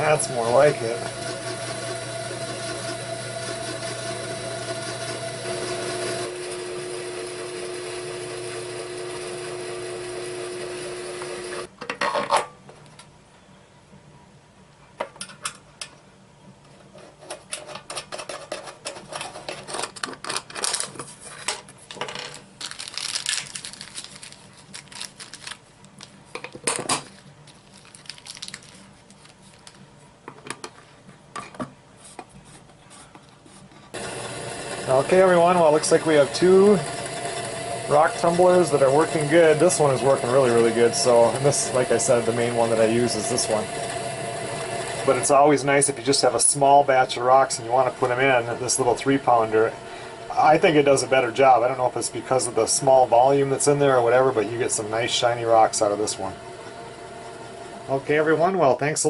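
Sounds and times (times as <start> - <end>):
rock tumbler motor hum: 0.0 - 11.7, 33.9 - 58.8
small hard objects clattering: 21.9 - 26.1, 27.5 - 29.8.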